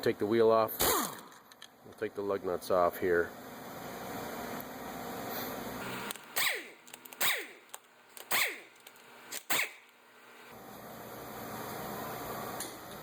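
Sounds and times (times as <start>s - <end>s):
impact gun spinning off lug nuts: 5.8s - 10.0s.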